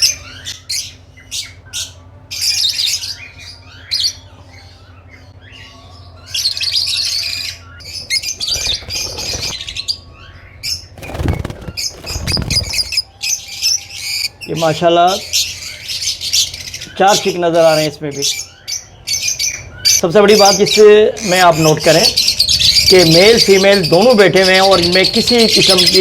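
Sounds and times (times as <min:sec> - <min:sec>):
steady low hum: 0:00.0 - 0:14.5
parrots chirping and squawking: 0:00.0 - 0:26.0.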